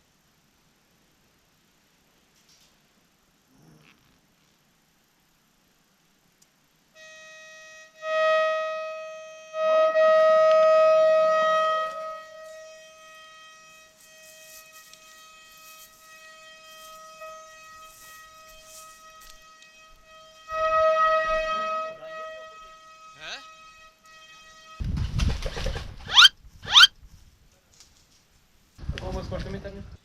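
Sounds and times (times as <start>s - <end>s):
steady alarm tone: 7.0s - 24.9s, 26.1s - 26.9s.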